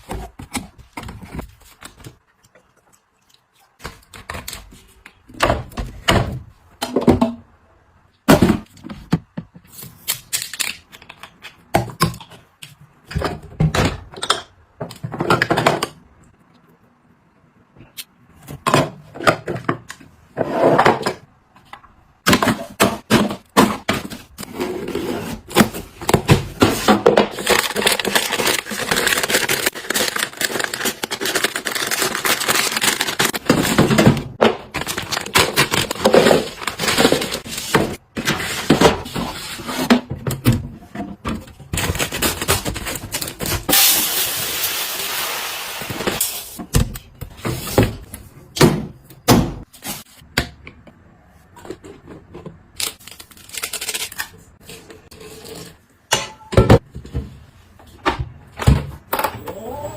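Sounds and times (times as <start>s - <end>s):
household items knocking and scraping: 18.4s - 30.7s.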